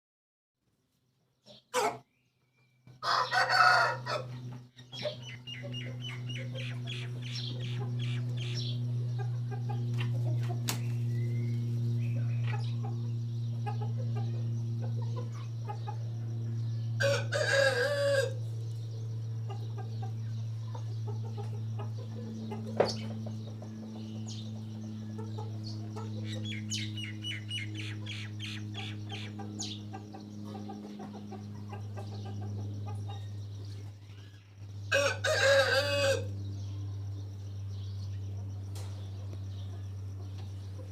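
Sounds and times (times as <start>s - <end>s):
steady low hum: 0.8s - 40.9s
rooster crowing: 2.9s - 4.4s, 17.0s - 18.5s, 34.8s - 36.4s.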